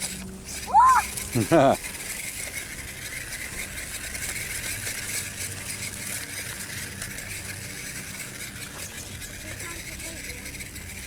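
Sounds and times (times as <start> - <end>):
small electric motor whirring: 0.0 - 11.0
toy truck rattling over rocks: 0.0 - 11.0.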